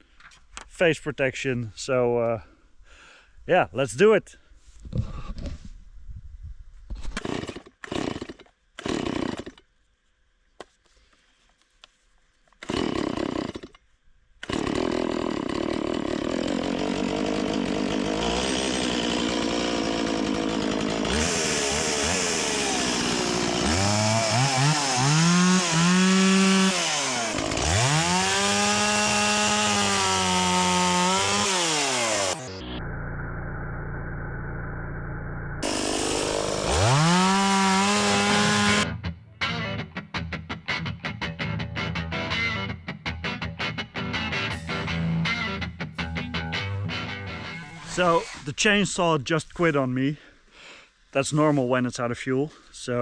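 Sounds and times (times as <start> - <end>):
chainsaw starting and revving: 7.2 - 9.6, 12.6 - 13.7, 14.4 - 38.9.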